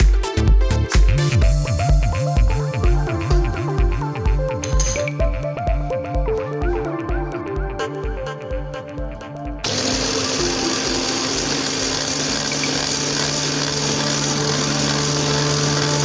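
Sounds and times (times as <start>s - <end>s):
background music with a beat: 0.0s - 16.0s
food processor whirring: 9.6s - 16.0s.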